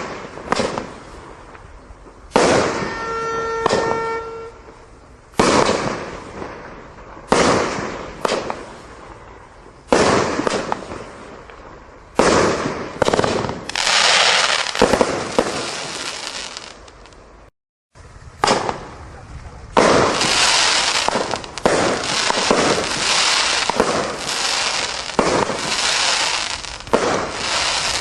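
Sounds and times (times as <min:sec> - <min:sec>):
firework aerial bangs: 0:00.0 - 0:17.5, 0:18.4 - 0:28.0
firework hissing crackle: 0:04.7 - 0:17.5, 0:19.7 - 0:28.0.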